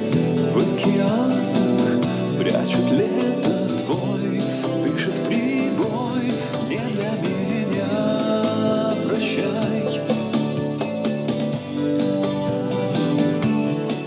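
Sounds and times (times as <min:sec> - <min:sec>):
man singing: 0:00.0 - 0:10.9
band with guitar and beat: 0:00.0 - 0:14.0.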